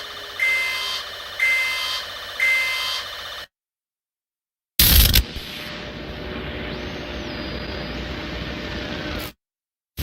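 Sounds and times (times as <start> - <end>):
high ringing warning beeps: 0.2 - 3.1
loud burst of noise: 4.8 - 9.4.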